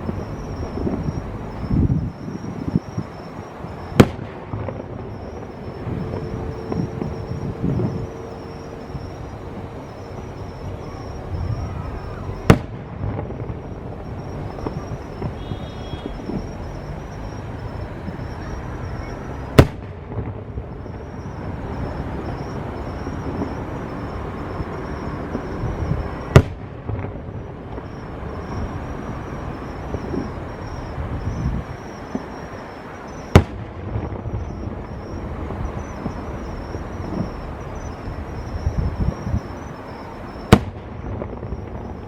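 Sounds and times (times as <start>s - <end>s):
outdoor background noise: 0.0s - 42.0s
firework shell bursts: 2.9s - 9.1s, 19.4s - 20.4s, 33.2s - 34.2s, 40.5s - 41.6s.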